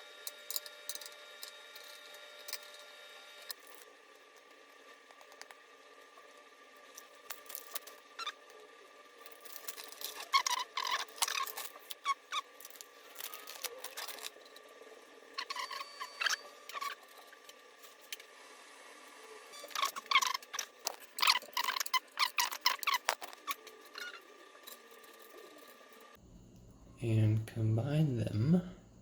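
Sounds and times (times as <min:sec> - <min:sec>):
small hard parts clicking and rattling: 0:06.8 - 0:08.6, 0:09.2 - 0:14.7, 0:19.6 - 0:26.2.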